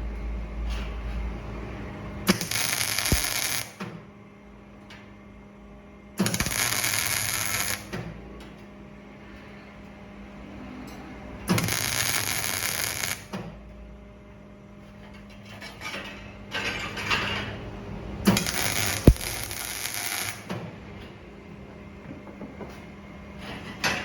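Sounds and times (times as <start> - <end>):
electrical hum: 1.8 - 3.8, 17.8 - 22.2
arc welding crackling hiss: 2.3 - 3.8, 6.2 - 8.0, 11.5 - 13.3, 18.3 - 20.5.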